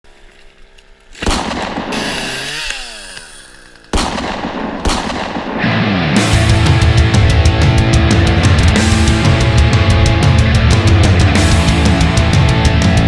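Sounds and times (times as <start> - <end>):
booming hits: 4.0 - 13.0
heavy rock music: 5.4 - 13.0.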